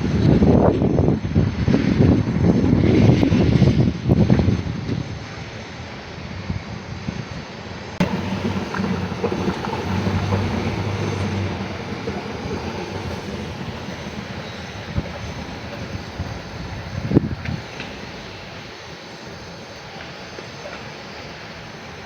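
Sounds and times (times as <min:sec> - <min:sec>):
traffic noise: 0:07.7 - 0:22.0
low engine hum: 0:08.0 - 0:18.7.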